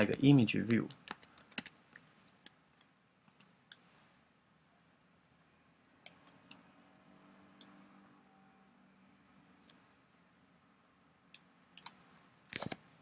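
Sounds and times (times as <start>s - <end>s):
computer mouse clicks: 0.7s - 3.9s, 6.0s - 6.7s, 7.6s - 7.8s, 11.3s - 12.9s.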